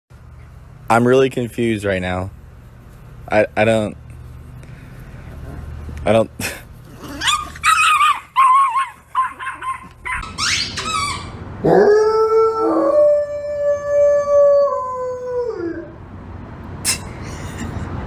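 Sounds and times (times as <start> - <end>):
dog whining and yipping: 7.0 - 12.2
dog howling: 7.1 - 16.0.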